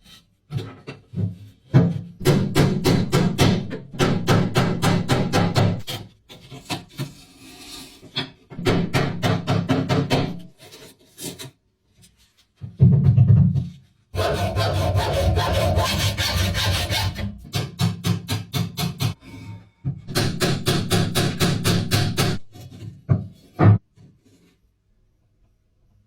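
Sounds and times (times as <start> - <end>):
scraping or filing strokes: 5.8 - 8.1, 14.2 - 17.6.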